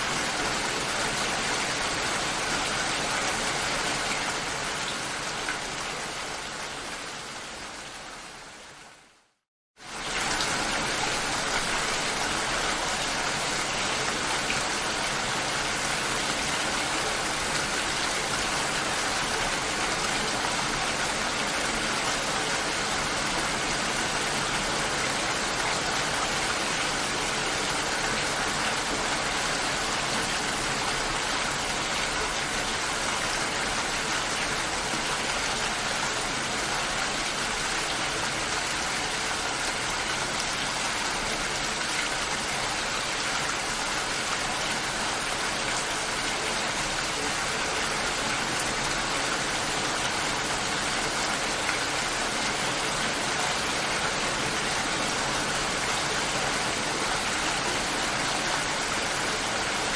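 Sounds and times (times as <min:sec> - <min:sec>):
steady rainfall: 0:00.0 - 0:59.9.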